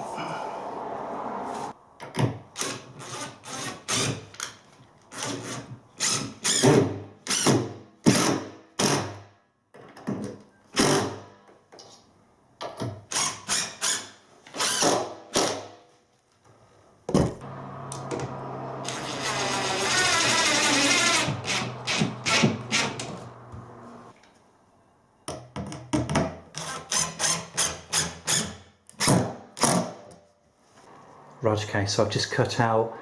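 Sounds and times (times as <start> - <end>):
continuous power tool: 17.4 - 24.1
power drill short bursts: 18.8 - 23.2.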